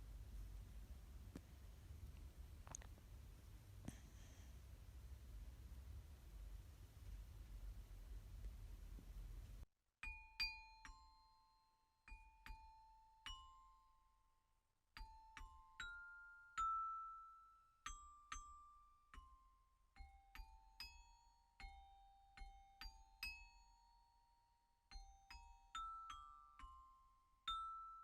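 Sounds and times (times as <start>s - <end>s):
bell-like mallet melody: 15.0s - 19.0s, 24.9s - 28.0s.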